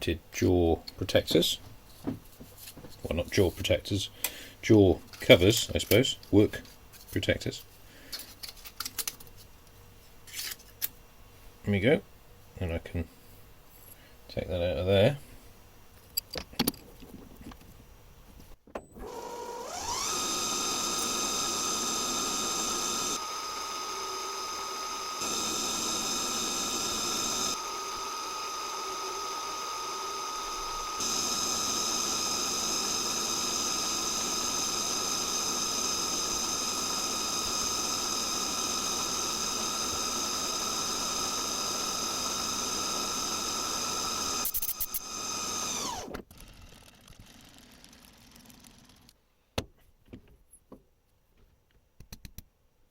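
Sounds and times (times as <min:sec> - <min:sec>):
metal lathe motor whine: 0:19.0 - 0:46.1
rough lathe running noise: 0:19.0 - 0:46.1.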